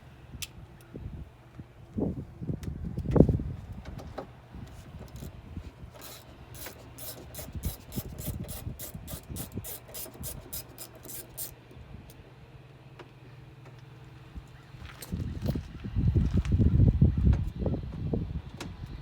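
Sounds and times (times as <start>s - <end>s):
socket ratchet clicking: 6.0s - 11.6s.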